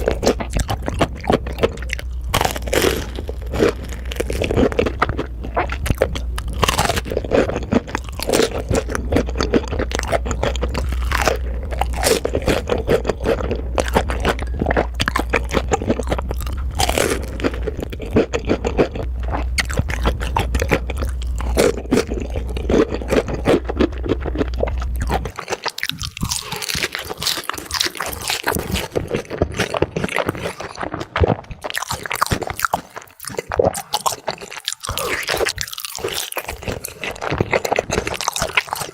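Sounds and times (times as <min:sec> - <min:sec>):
low hum: 0:00.0 - 0:25.3
crunching and chewing food: 0:00.0 - 0:38.9.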